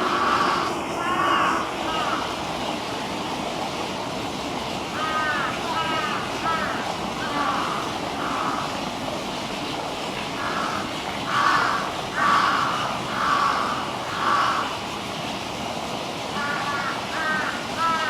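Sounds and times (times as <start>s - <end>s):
crow cawing: 0.0s - 2.4s, 5.0s - 8.8s, 10.4s - 14.8s, 16.4s - 18.0s.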